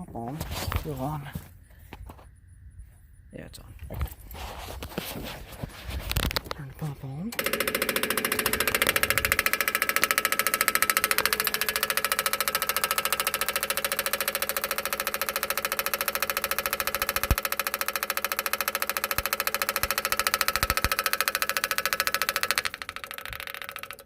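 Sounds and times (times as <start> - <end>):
electric fuel pump ticking: 6.1 - 24.0.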